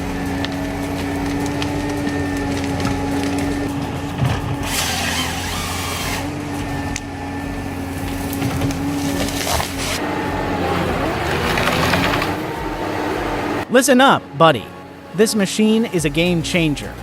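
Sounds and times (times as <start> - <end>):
wood cracking and knocking: 0.0 - 6.2, 8.0 - 10.0, 11.2 - 12.4
diesel engine running: 0.0 - 17.0.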